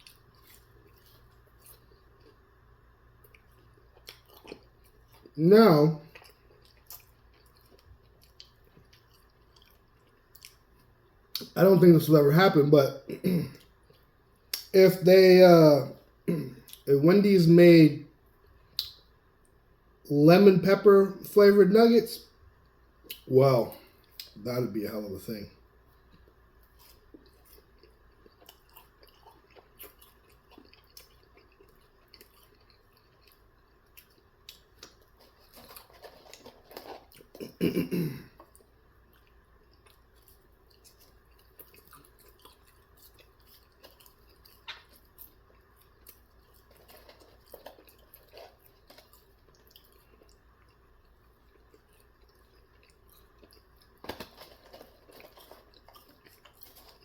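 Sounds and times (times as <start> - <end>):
chewing and wet mouth clicks: 3.2 - 5.4, 6.1 - 11.5, 18.5 - 19.6, 22.6 - 23.3, 26.1 - 35.8, 38.4 - 54.2.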